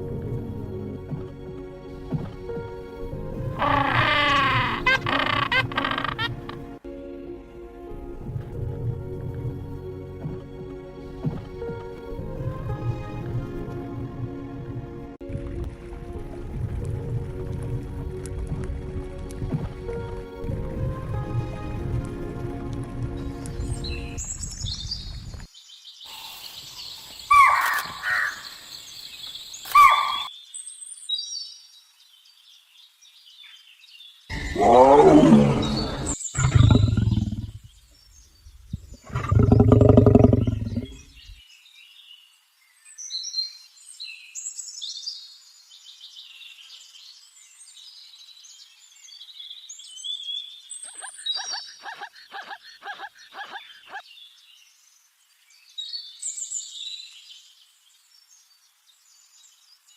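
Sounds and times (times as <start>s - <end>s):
fast rattling animal call: 3.6s - 6.6s, 34.3s - 37.6s
large animal roaring: 34.3s - 37.7s, 39.0s - 41.2s
birds chirping: 34.3s - 41.4s, 49.2s - 55.2s.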